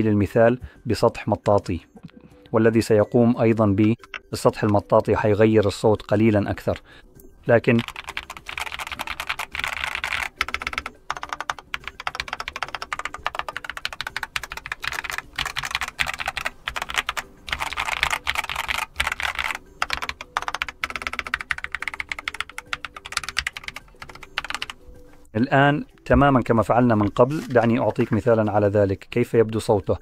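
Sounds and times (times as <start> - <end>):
mechanical keyboard typing: 3.8 - 5.0, 7.7 - 24.8.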